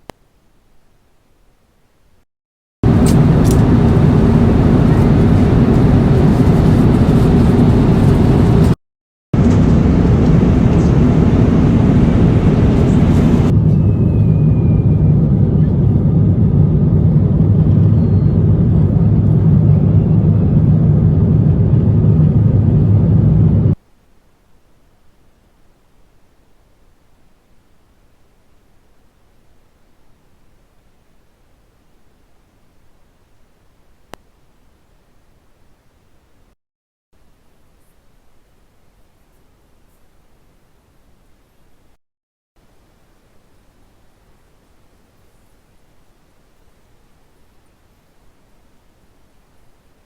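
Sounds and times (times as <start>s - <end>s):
jet airliner cabin rumble: 2.8s - 8.8s, 9.4s - 23.8s.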